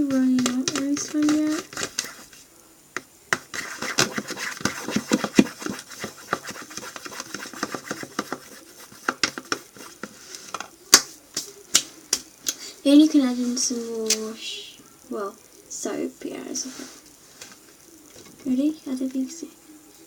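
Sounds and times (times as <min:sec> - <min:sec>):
pencil scraping in plastic bowl: 0:00.0 - 0:02.4, 0:03.3 - 0:10.6.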